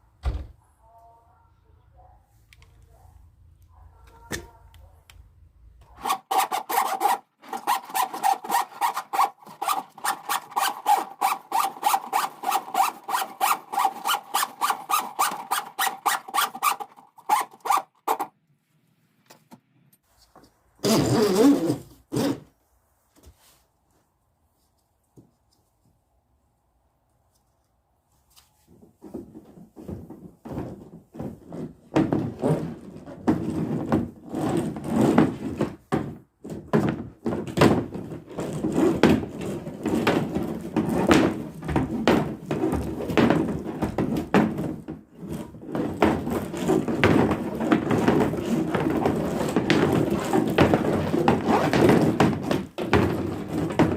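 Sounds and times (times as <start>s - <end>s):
hard objects knocking and clattering: 29.0s - 53.9s.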